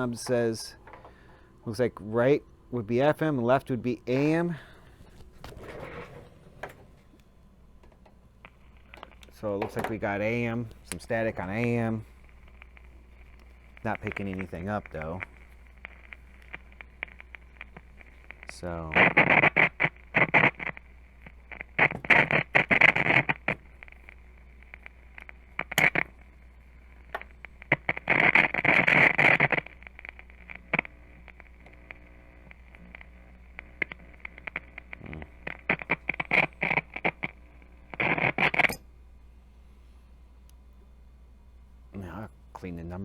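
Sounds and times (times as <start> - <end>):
radio static crackling: 0.0 - 39.2, 40.4 - 43.0
low steady hum: 0.0 - 43.0.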